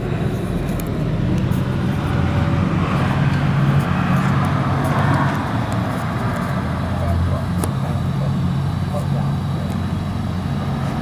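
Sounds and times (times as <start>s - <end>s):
road traffic: 0.0s - 11.0s
vehicle engine rumbling: 0.0s - 11.0s.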